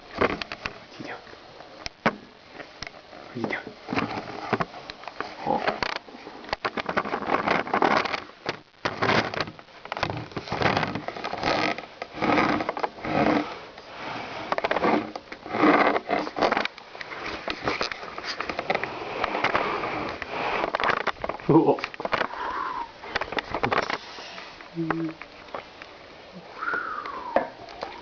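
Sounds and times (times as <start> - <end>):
breathy puffs: 22.2 - 24.8.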